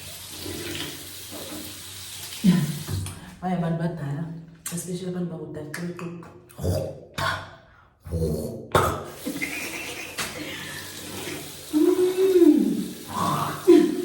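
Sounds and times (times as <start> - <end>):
tap water running into sink: 0.0 - 3.3, 9.1 - 14.0.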